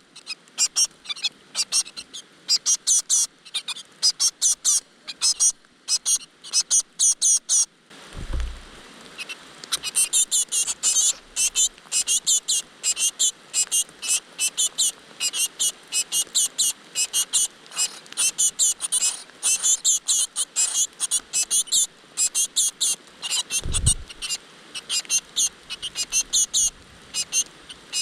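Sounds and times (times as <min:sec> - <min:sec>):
low thump: 0:08.2 - 0:08.8, 0:23.6 - 0:24.2
nestlings begging chirps: 0:09.2 - 0:28.0.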